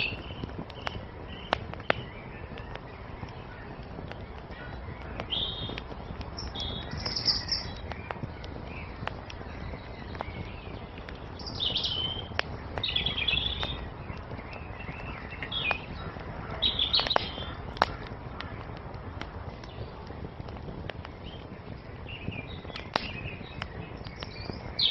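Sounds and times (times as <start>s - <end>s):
songbirds chirping: 0.0s - 24.9s
wood fire crackling and popping: 0.0s - 24.9s.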